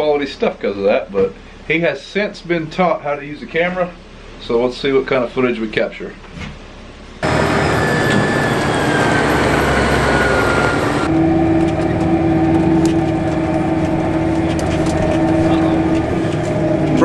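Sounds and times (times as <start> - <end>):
farm vehicle engine running: 7.2 - 17.0.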